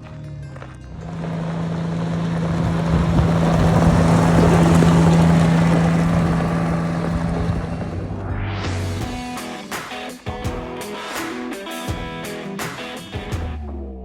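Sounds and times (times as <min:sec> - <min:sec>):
heavy diesel engine running: 0:00.6 - 0:09.1.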